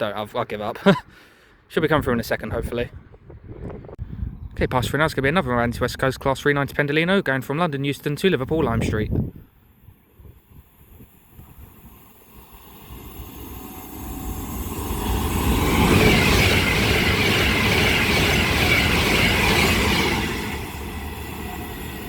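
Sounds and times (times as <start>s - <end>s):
electric train rushing past: 10.0s - 22.0s.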